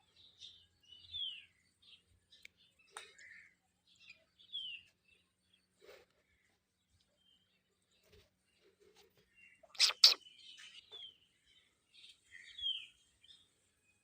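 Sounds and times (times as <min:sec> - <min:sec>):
parrot chirping: 0:09.7 - 0:10.2.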